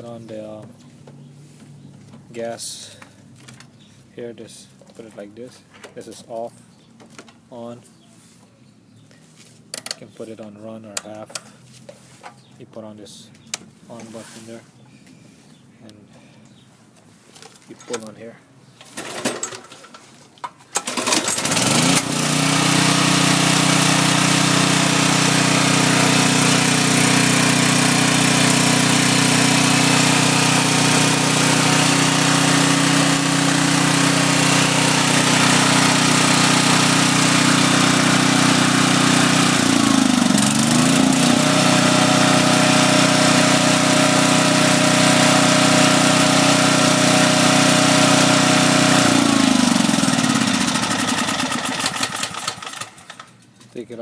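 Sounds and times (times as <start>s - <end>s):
generator engine pull-started and running: 18.8s - 53.7s.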